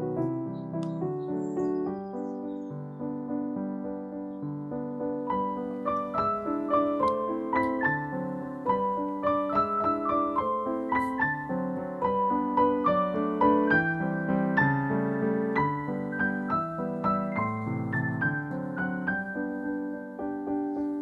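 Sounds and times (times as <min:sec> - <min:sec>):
piano music: 0:00.0 - 0:21.0.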